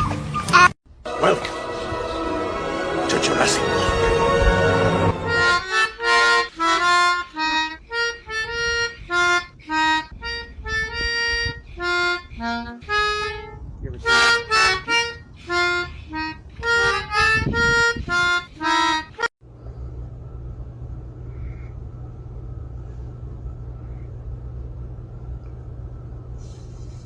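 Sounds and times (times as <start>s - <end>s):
reedy wind instrument notes: 0.0s - 19.3s
low hum with faint hiss: 19.5s - 27.0s.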